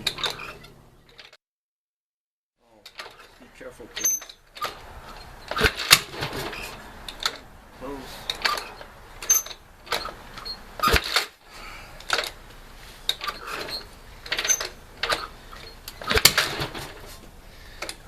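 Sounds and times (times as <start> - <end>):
motorcycle kickstart clanking: 0.0 - 1.4, 2.8 - 18.0.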